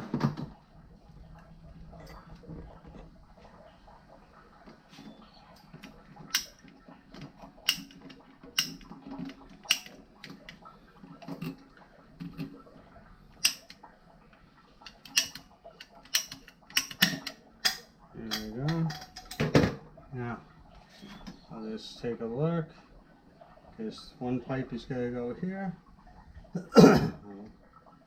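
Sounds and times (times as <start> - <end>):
plastic pipe fittings clicking: 5.6 - 11.6, 13.4 - 13.8, 14.8 - 19.5.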